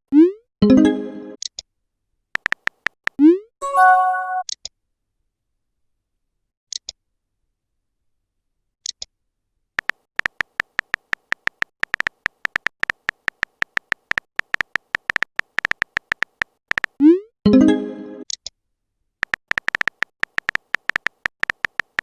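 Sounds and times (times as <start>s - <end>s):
phone keyboard typing beeps: 2.4s - 3.0s, 3.6s - 4.5s, 9.8s - 17.0s, 19.2s - 22.0s.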